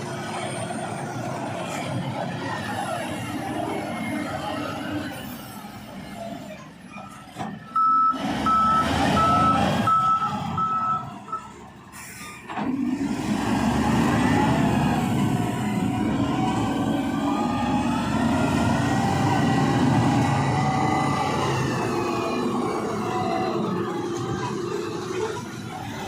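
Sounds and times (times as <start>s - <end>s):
heavy machine engine running: 0.0s - 26.0s
reversing alarm beeps: 7.0s - 11.6s.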